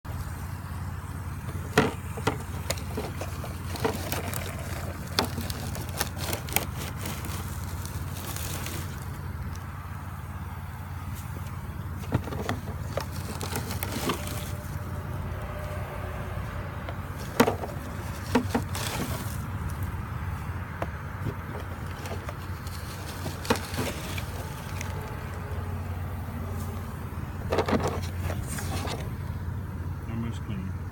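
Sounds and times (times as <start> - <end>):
low mechanical hum: 0.1 - 30.9
knocking and rattling: 16.9 - 19.2.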